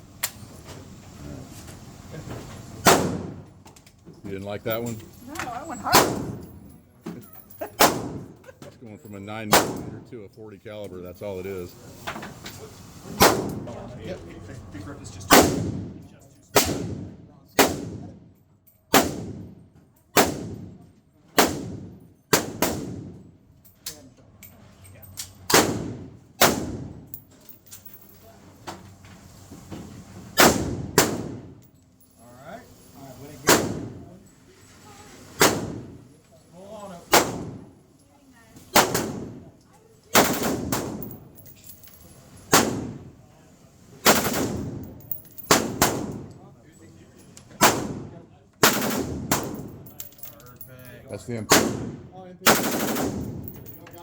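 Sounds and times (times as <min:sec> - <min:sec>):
gunshot echo: 0:02.8 - 0:03.4, 0:13.2 - 0:13.7, 0:15.3 - 0:16.0, 0:16.6 - 0:18.1, 0:20.2 - 0:20.7, 0:30.4 - 0:31.5, 0:51.5 - 0:53.5
gunshots echoing: 0:02.8 - 0:03.4, 0:07.8 - 0:08.3, 0:09.5 - 0:10.0, 0:13.2 - 0:13.7, 0:15.3 - 0:16.0, 0:25.5 - 0:26.9, 0:30.4 - 0:31.5, 0:38.8 - 0:39.4, 0:40.2 - 0:41.2, 0:44.0 - 0:46.3, 0:47.6 - 0:49.9, 0:51.5 - 0:53.8
submachine gun bursts: 0:44.0 - 0:46.1, 0:52.5 - 0:53.8.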